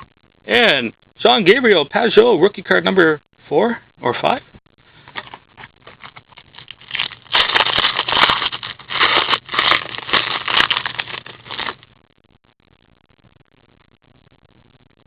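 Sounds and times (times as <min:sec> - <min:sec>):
wrapper crinkling and tearing: 0:05.2 - 0:11.9.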